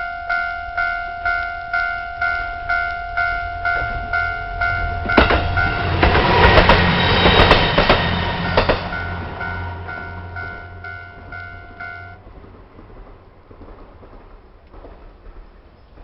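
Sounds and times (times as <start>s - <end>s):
level-crossing warning bell ringing: 0.0s - 12.2s
diesel train passing: 0.0s - 15.8s
train wheels clacking over rail joints: 4.6s - 16.0s.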